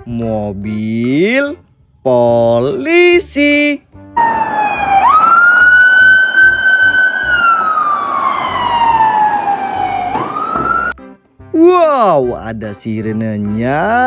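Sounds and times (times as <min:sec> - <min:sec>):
police siren wailing: 0:04.2 - 0:11.0.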